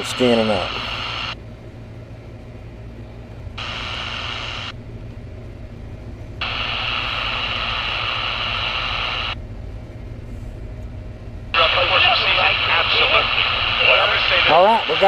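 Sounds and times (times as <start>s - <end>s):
radio static hiss: 0.0s - 1.4s, 3.6s - 4.8s, 6.4s - 9.4s, 11.6s - 15.0s.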